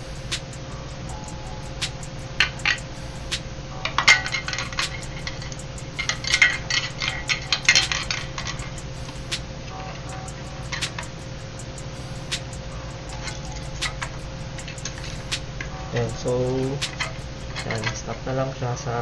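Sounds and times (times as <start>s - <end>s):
steady low hum: 0.0s - 19.0s
plastic parts clicking and rattling: 3.8s - 8.7s, 16.9s - 18.1s.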